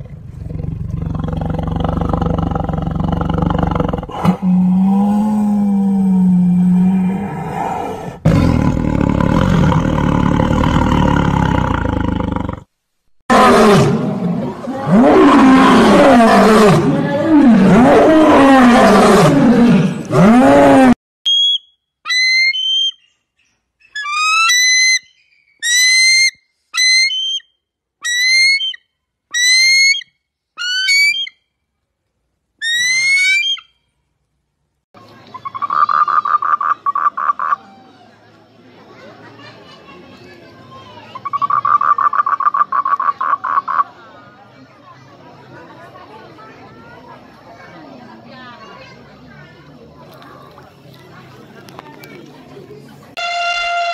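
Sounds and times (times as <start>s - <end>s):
big cat roaring: 0.0s - 12.7s, 13.3s - 21.0s
loud drawn-out animal calls: 32.6s - 33.7s, 35.4s - 37.9s, 41.2s - 44.0s.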